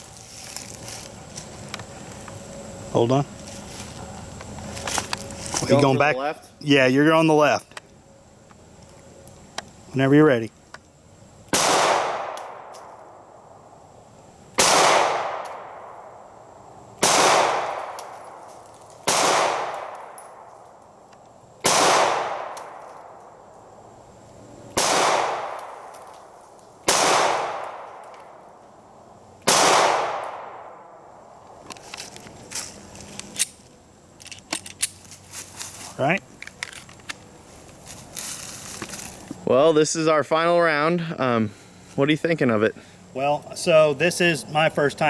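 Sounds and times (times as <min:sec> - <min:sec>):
pistol shots echoing: 0:11.5 - 0:12.7, 0:14.6 - 0:15.8, 0:17.0 - 0:18.1, 0:19.0 - 0:20.4, 0:21.6 - 0:22.8, 0:24.8 - 0:25.9, 0:26.8 - 0:28.1, 0:29.4 - 0:30.7.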